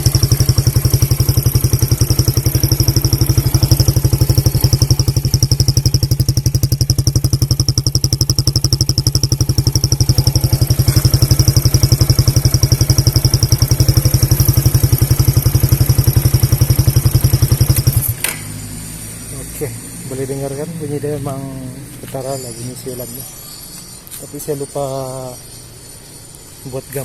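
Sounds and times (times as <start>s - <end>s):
motorcycle idling: 0.0s - 27.0s
high exhaust whistle: 8.6s - 27.0s.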